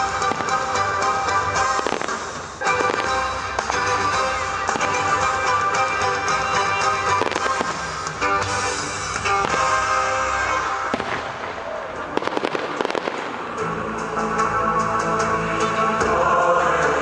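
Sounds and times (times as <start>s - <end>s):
fireworks bangs: 0.0s - 5.4s, 6.9s - 13.6s
fireworks crackling: 0.0s - 13.7s
music: 0.0s - 17.0s.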